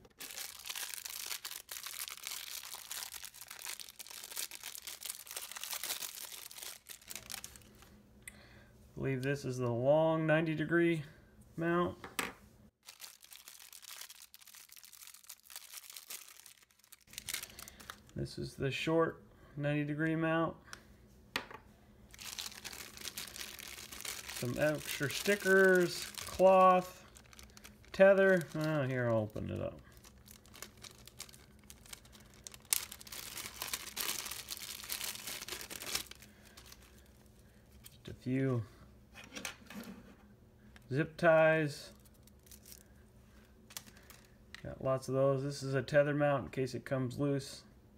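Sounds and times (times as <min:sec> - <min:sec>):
plastic bag tearing: 0:00.0 - 0:07.7, 0:12.8 - 0:18.1, 0:22.1 - 0:37.0
plastic crackling: 0:00.0 - 0:07.8, 0:12.8 - 0:18.2, 0:22.1 - 0:37.1, 0:41.9 - 0:42.9, 0:43.7 - 0:44.3
plastic packaging crinkling: 0:00.0 - 0:07.8, 0:12.8 - 0:18.2, 0:22.1 - 0:37.3, 0:41.9 - 0:42.9, 0:43.7 - 0:44.4.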